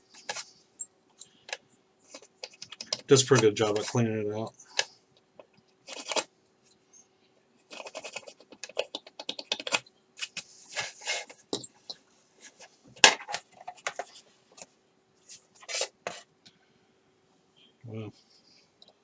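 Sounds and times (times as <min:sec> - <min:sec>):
clicks and scrapes of plastic parts: 0:00.1 - 0:00.5, 0:01.1 - 0:04.0, 0:04.7 - 0:06.3, 0:07.7 - 0:11.5, 0:12.4 - 0:14.7.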